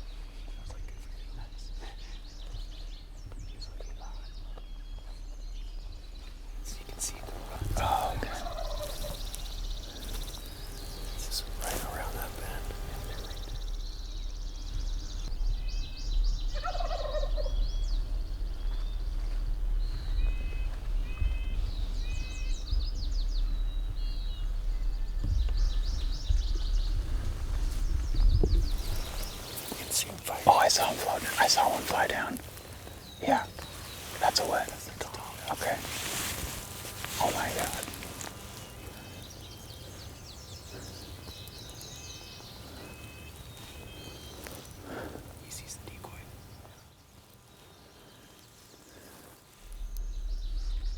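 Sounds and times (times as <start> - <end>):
birds chirping: 0.0 - 50.9
songbird singing: 0.0 - 50.9
faint outdoor hush: 5.9 - 50.9
turkey gobbling: 8.4 - 9.2, 16.6 - 17.6.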